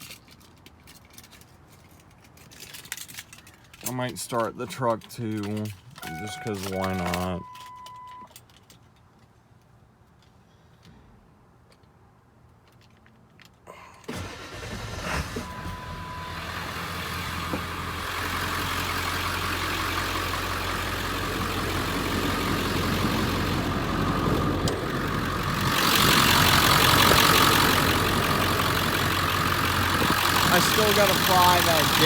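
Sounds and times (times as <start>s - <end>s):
diesel engine starting and idling: 6.0s - 8.2s, 14.1s - 32.0s.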